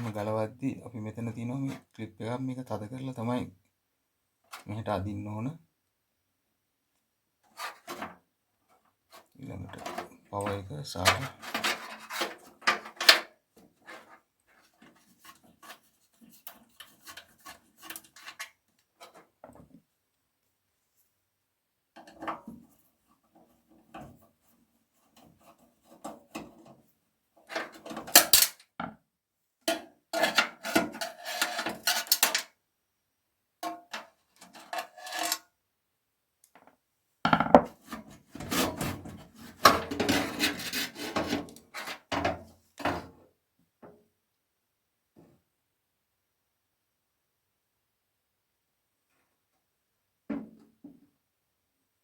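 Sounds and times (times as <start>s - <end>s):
cables rattling and rubbing: 9.2s - 13.2s.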